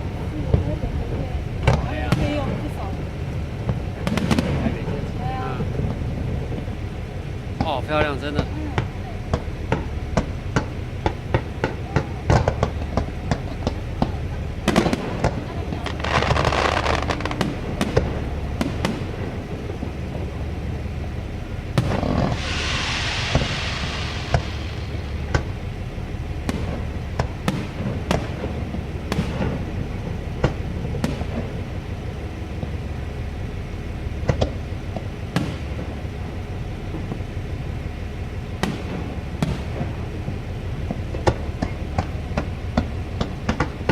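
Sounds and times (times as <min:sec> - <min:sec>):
firework bangs: 0:00.0 - 0:43.9
hissing crackling firework showers: 0:00.0 - 0:43.9
steady low rumble: 0:00.0 - 0:43.9.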